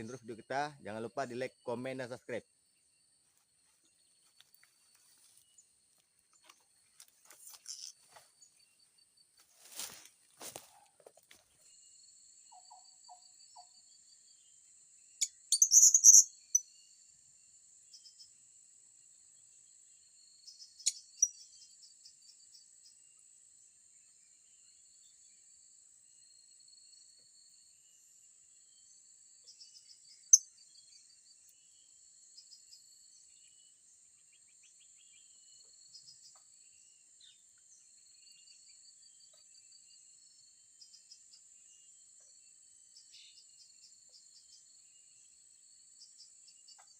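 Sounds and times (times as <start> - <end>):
shrill bird calls: 15.2 - 16.6
fast ticking insect trill: 15.2 - 16.7.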